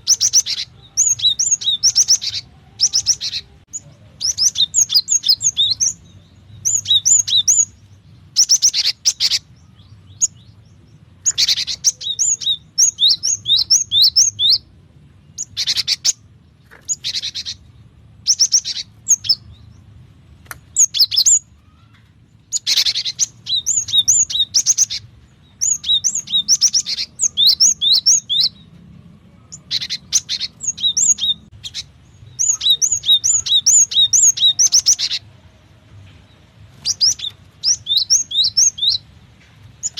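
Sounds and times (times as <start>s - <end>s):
birds calling in rapid high notes: 0.0s - 28.8s, 29.4s - 35.4s, 36.4s - 39.9s.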